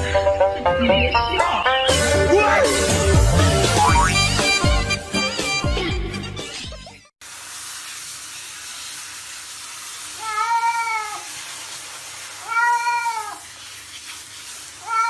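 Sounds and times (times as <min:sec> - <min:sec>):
cat meowing: 0:10.2 - 0:11.3, 0:12.4 - 0:13.4.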